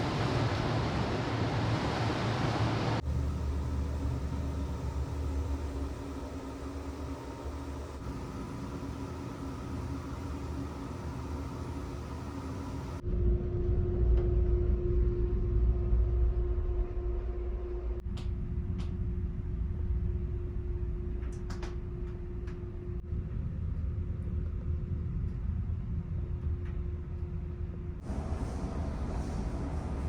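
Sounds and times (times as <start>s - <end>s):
ship engines rumbling: 0.0s - 13.0s, 28.0s - 30.0s.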